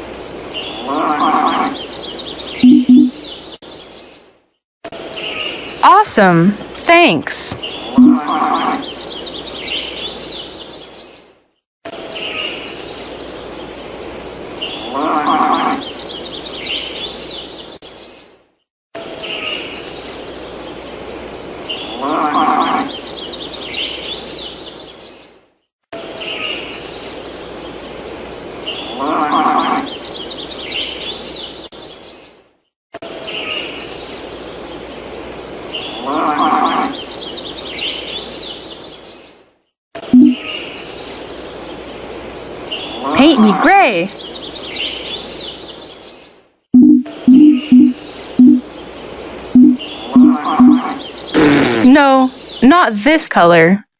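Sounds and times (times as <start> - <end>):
birds chirping: 0.4 - 4.3, 5.0 - 11.3, 40.1 - 53.0
low drawn-out animal call: 0.8 - 1.9, 7.8 - 8.9, 14.8 - 15.9, 22.0 - 23.0, 28.8 - 30.0, 36.0 - 37.0, 49.6 - 51.9.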